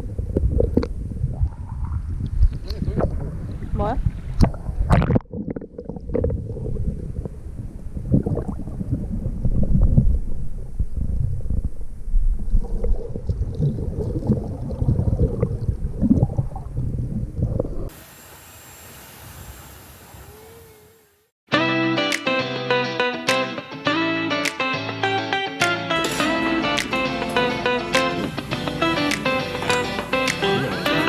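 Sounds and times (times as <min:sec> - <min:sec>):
steady hiss: 0:17.9 - 0:21.3, 0:26.5 - 0:31.0.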